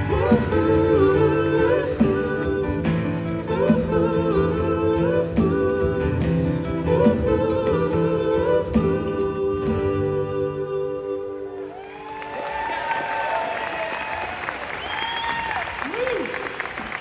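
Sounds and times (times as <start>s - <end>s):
vocal group singing harmonies: 0.0s - 12.1s.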